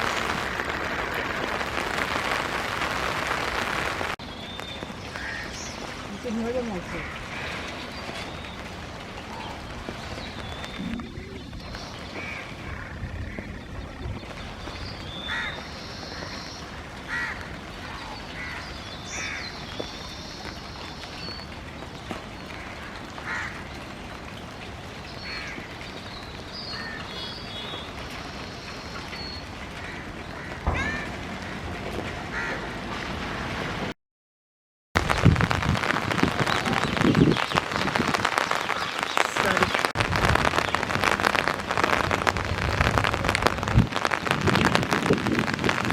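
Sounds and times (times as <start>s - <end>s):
heavy rain pattering: 0.0s - 34.0s, 35.0s - 45.9s
small birds singing: 4.2s - 12.5s, 13.1s - 16.7s, 25.0s - 29.6s, 36.4s - 40.9s
crow cawing: 5.1s - 5.6s, 15.3s - 16.3s, 17.1s - 17.5s, 22.6s - 23.6s, 29.8s - 31.2s, 32.3s - 32.7s.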